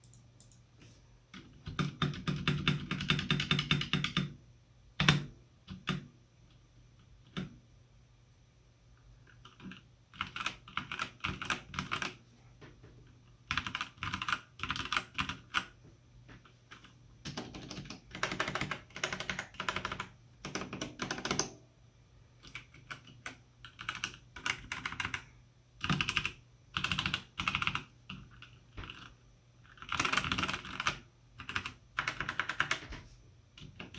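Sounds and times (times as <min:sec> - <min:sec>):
mechanical keyboard keys pressed: 0:01.4 - 0:04.3, 0:13.5 - 0:15.7, 0:16.7 - 0:21.6, 0:22.4 - 0:25.2, 0:25.8 - 0:29.1, 0:29.7 - 0:33.0.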